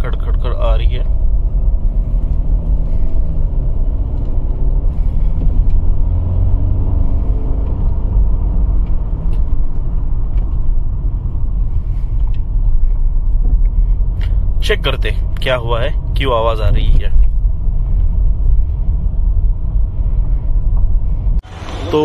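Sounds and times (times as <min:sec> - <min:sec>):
suspension knocks and rattles: 0:00.0 - 0:21.4
low road rumble: 0:00.0 - 0:22.0.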